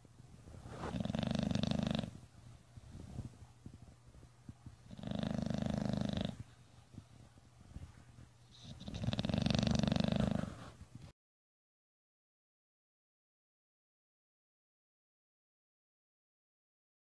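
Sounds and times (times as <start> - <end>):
dog snoring: 0.7 - 2.2, 4.9 - 6.4, 8.5 - 10.8.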